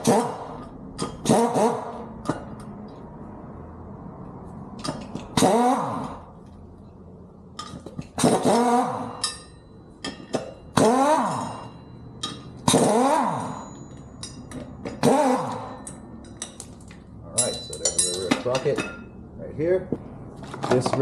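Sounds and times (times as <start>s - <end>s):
light metallic clinks: 15.8s - 19.1s.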